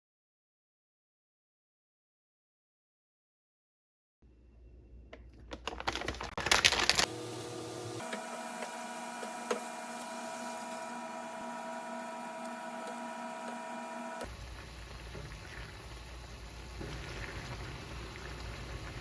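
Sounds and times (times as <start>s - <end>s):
small machine humming: 7.1s - 19.0s.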